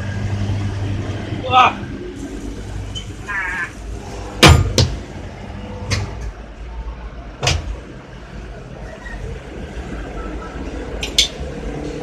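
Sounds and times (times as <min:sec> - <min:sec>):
steady low hum: 0:00.0 - 0:08.7.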